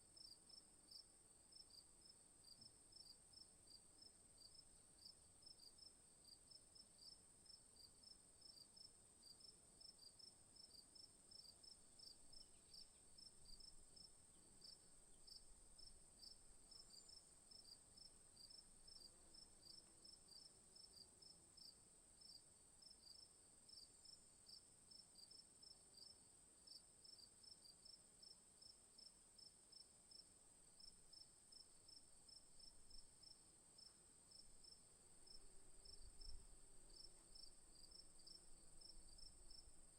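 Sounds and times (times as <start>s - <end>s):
crickets chirping: 4.4s - 25.4s, 29.4s - 39.9s.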